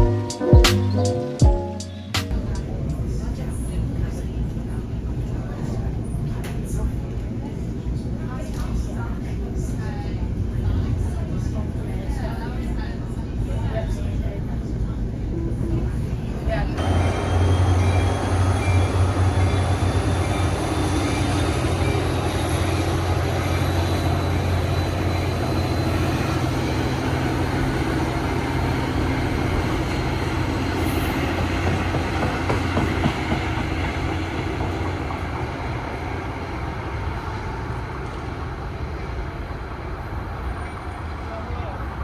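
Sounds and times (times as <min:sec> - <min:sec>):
train rumbling on rails: 0:02.3 - 0:42.0
high whine from train wheels: 0:16.7 - 0:41.9.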